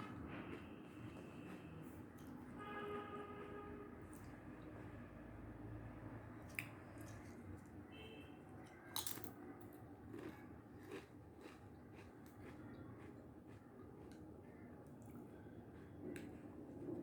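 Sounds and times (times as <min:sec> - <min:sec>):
chewing with crunches: 0:00.0 - 0:02.4, 0:08.6 - 0:17.0.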